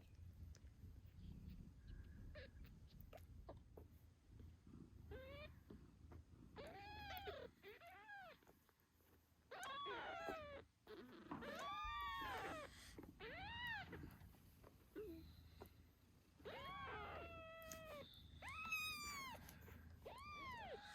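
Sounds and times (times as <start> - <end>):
cat purring: 0.0 - 8.4
kittens meowing: 6.6 - 8.5, 9.5 - 14.2, 16.4 - 20.9.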